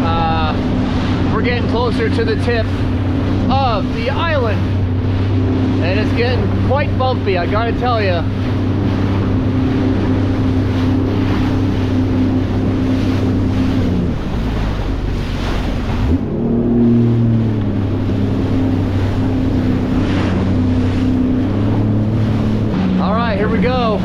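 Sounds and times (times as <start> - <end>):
watercraft engine running: 0.0 - 24.0
wind buffeting microphone: 0.0 - 24.0.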